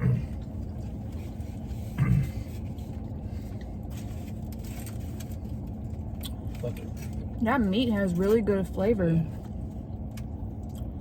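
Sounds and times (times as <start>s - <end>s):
steady low rumble: 0.0s - 11.0s
faint chewing: 9.4s - 11.0s.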